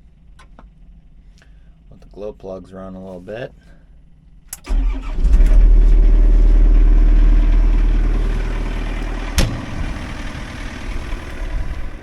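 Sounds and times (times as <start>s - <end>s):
diesel engine starting and running: 4.5s - 12.0s.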